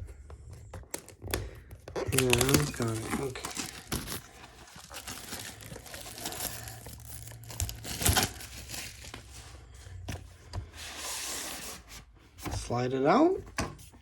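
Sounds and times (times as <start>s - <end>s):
packaging tearing and crinkling: 0.9s - 9.2s.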